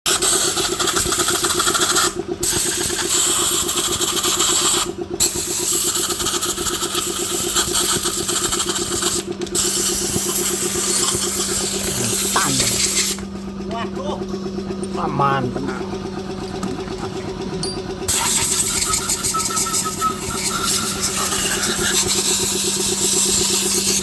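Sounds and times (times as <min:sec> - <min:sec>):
hiss: 0:00.1 - 0:13.2, 0:18.1 - 0:24.0
diesel engine running: 0:00.1 - 0:24.0.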